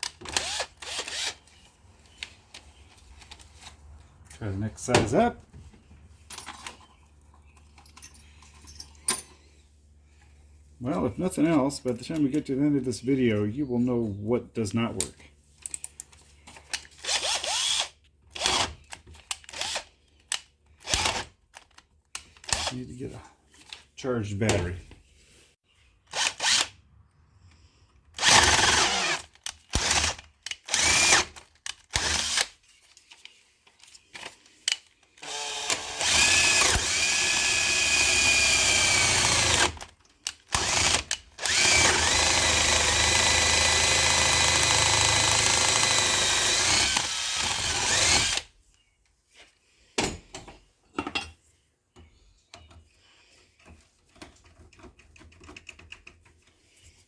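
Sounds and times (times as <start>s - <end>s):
power drill whining: 0.2s - 2.3s, 16.9s - 18.8s, 20.8s - 21.3s, 26.1s - 26.8s, 28.2s - 32.6s, 35.2s - 39.9s, 40.5s - 48.5s.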